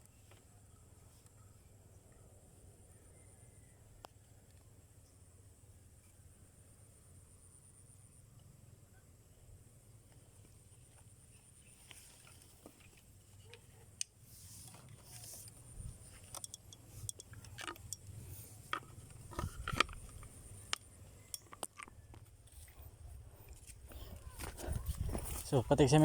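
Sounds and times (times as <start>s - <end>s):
rustling: 10.8s - 26.0s.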